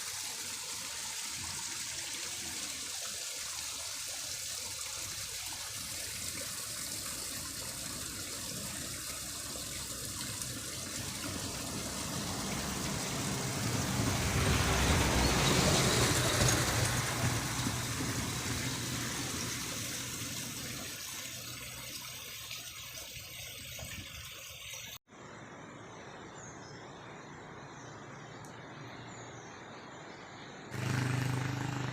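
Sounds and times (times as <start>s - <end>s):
flowing water rushing: 0.0s - 25.0s.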